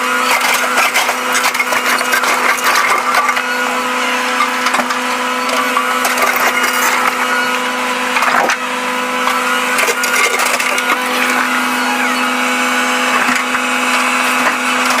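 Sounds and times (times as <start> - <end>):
excavator engine and hydraulics drone: 0.0 - 15.0
cracks and scrapes: 0.2 - 3.5.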